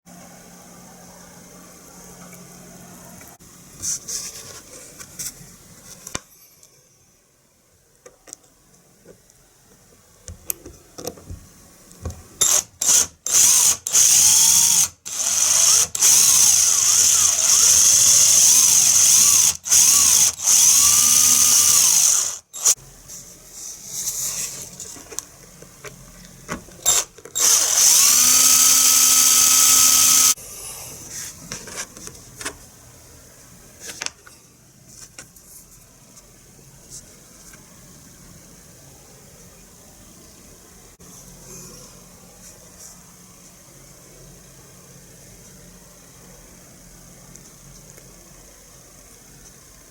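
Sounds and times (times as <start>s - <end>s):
small power tool running: 12.4s - 22.8s, 26.8s - 30.4s.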